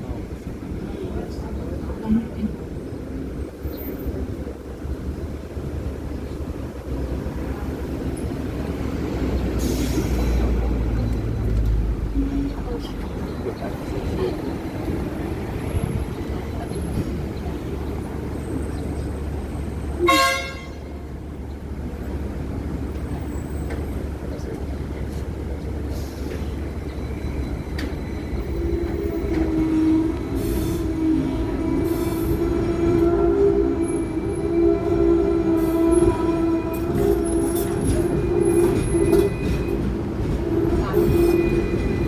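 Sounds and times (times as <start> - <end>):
tram rumbling on rails: 0.0 - 42.0
steel wheels squealing on rails: 8.0 - 20.0, 22.7 - 42.0.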